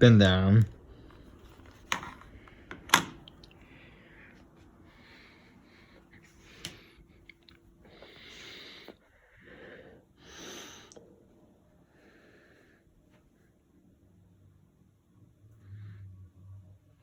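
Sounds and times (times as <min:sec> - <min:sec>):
person breathing and sniffing: 0:07.8 - 0:11.0.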